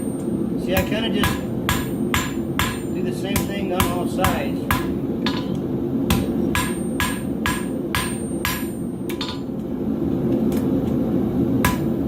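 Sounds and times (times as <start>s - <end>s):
hammer ringing on anvil: 0.0s - 9.5s
steady low rumble: 0.0s - 12.0s.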